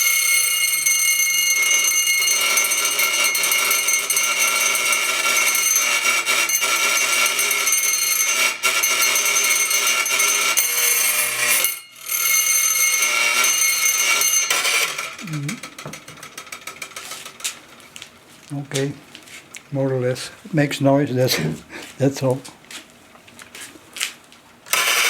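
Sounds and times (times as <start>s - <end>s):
electric doorbell ringing: 0.0s - 17.3s, 24.7s - 25.0s.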